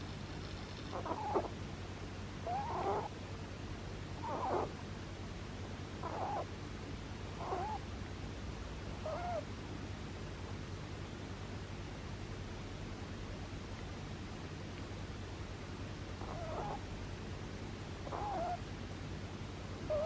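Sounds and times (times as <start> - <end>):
rabbit snoring: 0.9 - 1.6, 2.4 - 3.2, 4.2 - 4.8, 6.0 - 6.5, 7.2 - 7.9, 8.8 - 9.5, 16.2 - 16.9, 18.0 - 18.6, 19.8 - 20.0.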